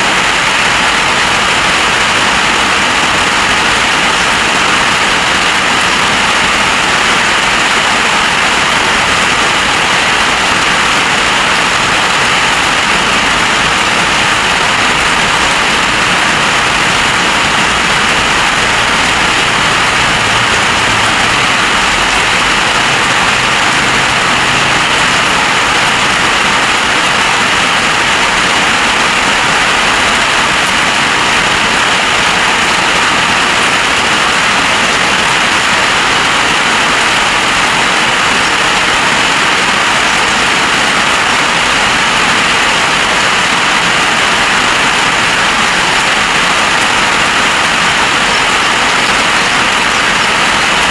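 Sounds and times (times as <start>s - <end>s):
heavy rain: 0.0s - 50.9s.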